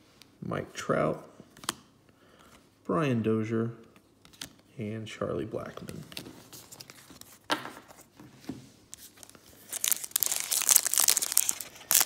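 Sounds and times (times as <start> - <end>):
foil wrapper tearing and crinkling: 9.2 - 12.0.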